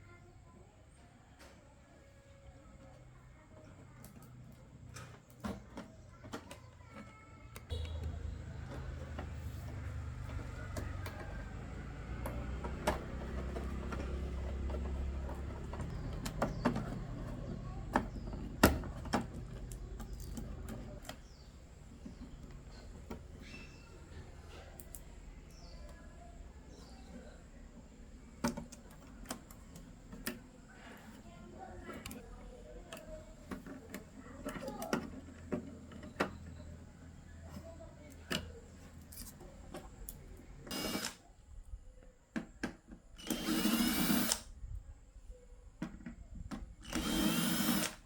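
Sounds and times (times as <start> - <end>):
clicks and knocks of tools: 27.8 - 41.2
small electric motor running: 40.7 - 41.2, 43.2 - 44.5, 46.8 - 48.0.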